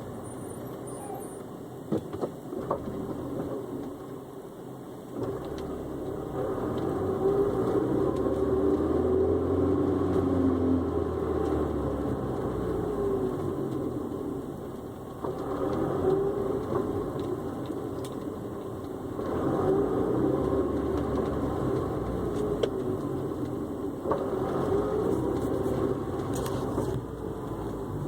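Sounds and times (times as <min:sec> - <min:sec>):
car engine running: 0:10.8 - 0:28.0.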